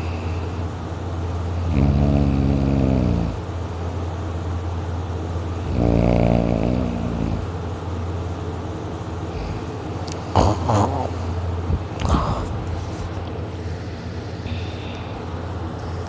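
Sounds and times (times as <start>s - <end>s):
breathing: 0.0s - 0.6s, 14.4s - 16.0s
heavy snoring: 1.6s - 3.4s, 5.6s - 7.5s, 10.3s - 11.2s.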